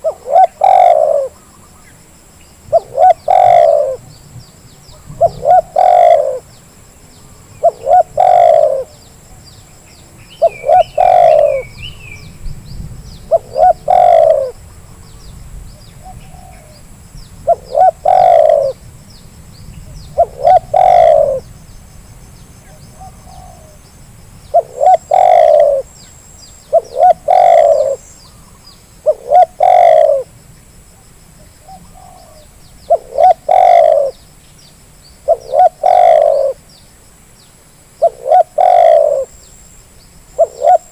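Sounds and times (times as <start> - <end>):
dove cooing: 0.0 - 1.5, 2.7 - 4.2, 4.9 - 6.6, 7.5 - 9.0, 10.4 - 12.2, 13.3 - 14.6, 16.0 - 16.8, 17.4 - 18.8, 19.9 - 21.5, 22.7 - 23.8, 24.5 - 25.9, 26.7 - 30.3, 31.6 - 34.2, 35.2 - 36.6, 38.0 - 39.4, 40.4 - 40.9
faint small-bird chirps: 21.6 - 29.8.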